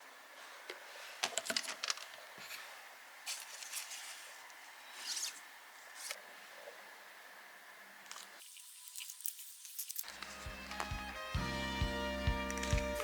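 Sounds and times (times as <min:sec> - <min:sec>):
scraping rustling noises: 0:00.9 - 0:06.2.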